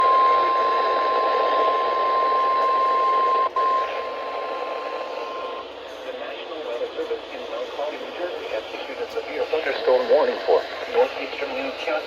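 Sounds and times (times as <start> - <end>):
steady alarm tone: 0.0 - 5.6.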